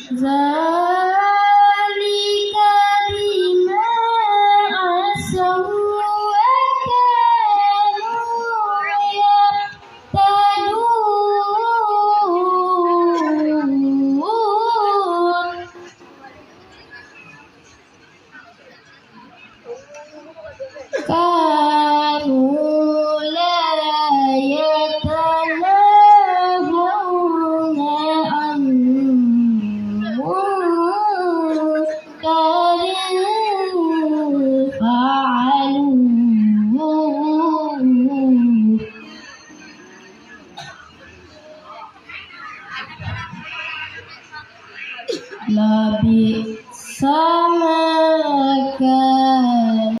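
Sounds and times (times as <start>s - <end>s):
child chanting melodically: 0.1s - 15.8s, 21.0s - 38.9s, 45.5s - 50.0s.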